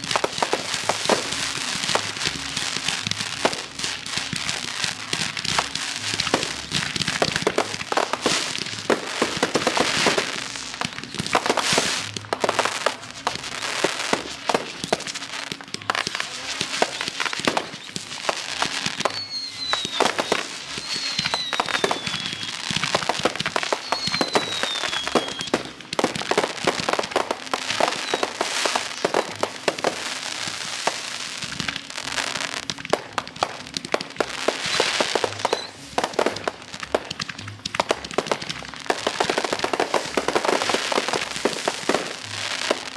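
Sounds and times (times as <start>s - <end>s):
fireworks bangs and crackling: 0.0s - 42.9s
whistling shells falling in pitch: 19.0s - 23.1s, 23.7s - 25.7s, 34.6s - 35.8s.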